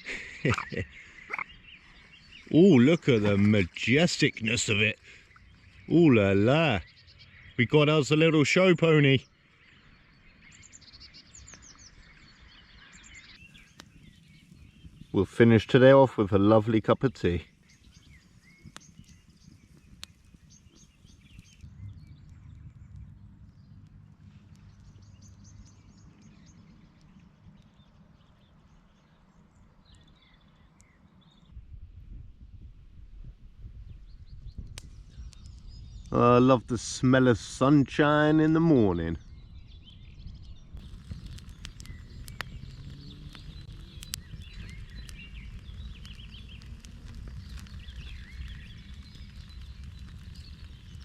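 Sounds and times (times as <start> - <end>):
songbirds chirping: 0.0 - 32.2, 33.2 - 51.0
low outdoor rumble: 11.3 - 38.3, 39.1 - 51.0
sharp clicks: 40.8 - 51.0.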